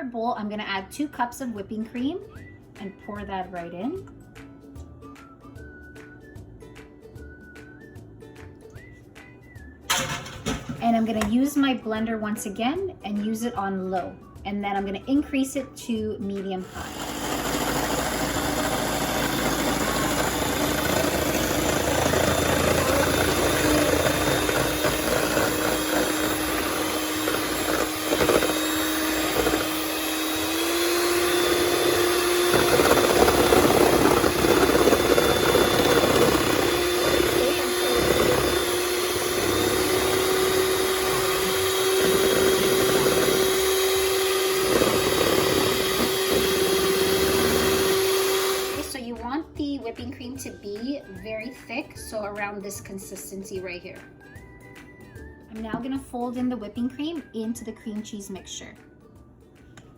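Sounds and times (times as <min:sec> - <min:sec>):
beaters churning cream: 0:16.6 - 0:49.0
electric hand mixer humming: 0:16.6 - 0:49.0.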